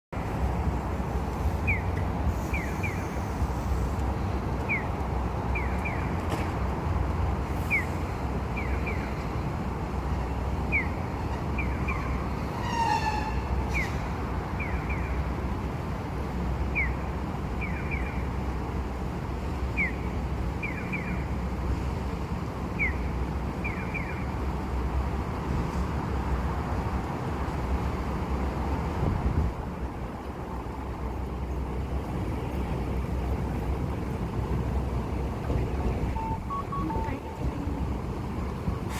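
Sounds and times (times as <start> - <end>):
street traffic rumble: 0.1 - 38.9
pedestrian crossing signal chirping: 1.5 - 3.4, 4.5 - 6.3, 7.7 - 9.4, 10.1 - 15.5, 16.6 - 18.6, 19.7 - 21.5, 22.6 - 24.5, 34.9 - 38.9.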